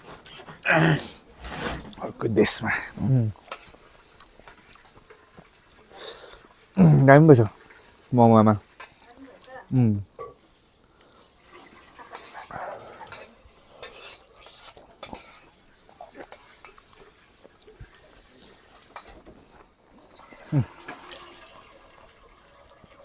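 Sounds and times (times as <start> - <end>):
person speaking: 2.0 - 3.4, 6.8 - 7.5, 8.1 - 8.6, 9.7 - 10.1.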